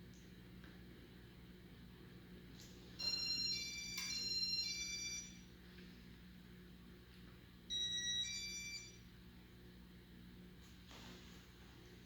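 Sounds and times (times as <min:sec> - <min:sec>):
electronic ringtone beeping melody: 0:07.7 - 0:09.0.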